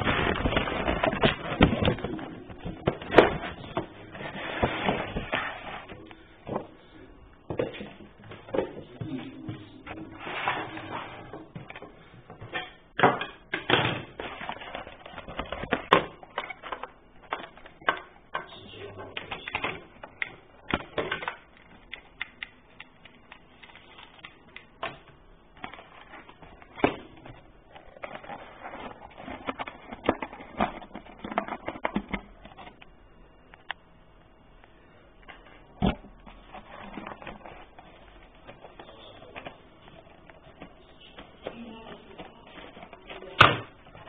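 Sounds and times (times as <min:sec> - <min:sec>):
box packaging clicks and rustles: 0:00.0 - 0:06.8, 0:07.4 - 0:18.2, 0:18.8 - 0:33.0, 0:35.2 - 0:44.0.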